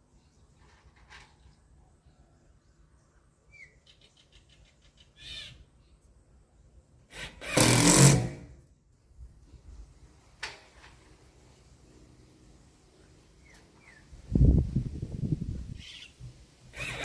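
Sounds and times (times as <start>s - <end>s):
power drill driving screw into wood: 7.1s - 8.6s, 16.7s - 17.0s.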